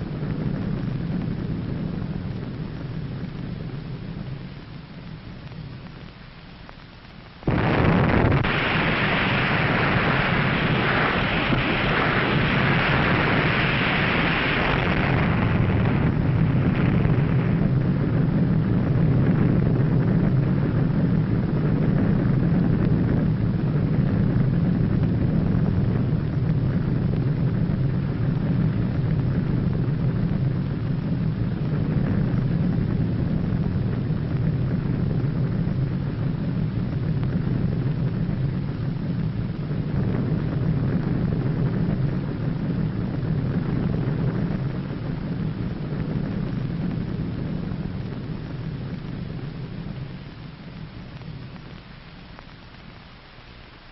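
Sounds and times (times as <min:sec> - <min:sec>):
high hiss: 0:00.0 - 0:19.5
deep rumble: 0:00.0 - 0:53.9.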